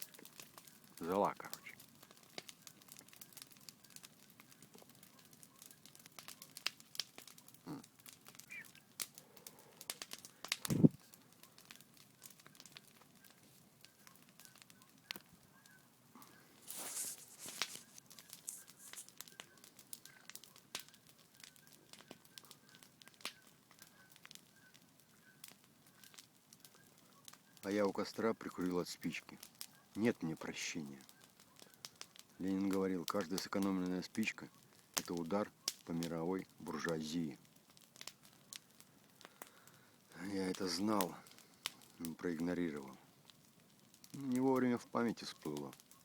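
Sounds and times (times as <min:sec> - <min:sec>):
campfire crackling and popping: 0:00.0 - 0:46.0.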